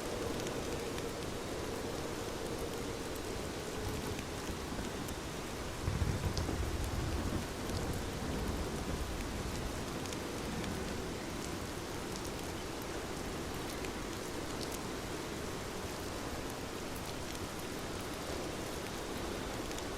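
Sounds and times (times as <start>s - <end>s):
steady rainfall: 0.0s - 19.9s
low rumble of thunder: 0.1s - 12.5s.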